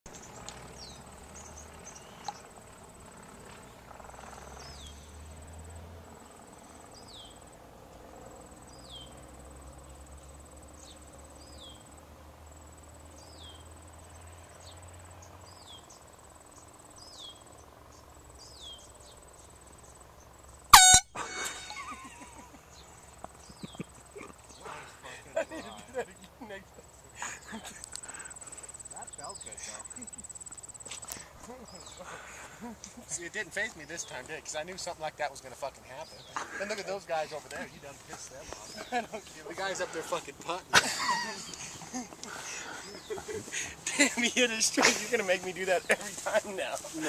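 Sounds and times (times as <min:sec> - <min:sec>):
high insect trill: 0:00.1 - 0:47.0
air horn blast: 0:20.7 - 0:21.7
short falling chirps: 0:20.8 - 0:22.0.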